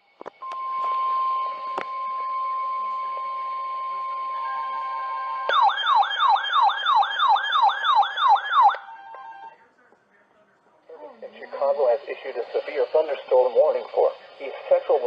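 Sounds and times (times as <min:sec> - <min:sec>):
siren-like sweeping tone: 0:00.4 - 0:09.5.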